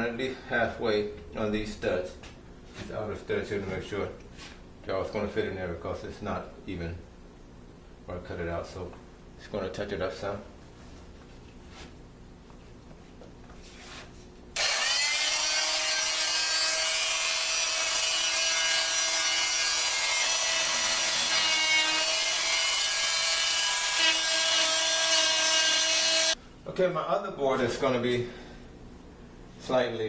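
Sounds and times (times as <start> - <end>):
power saw cutting wood: 14.6 - 26.4.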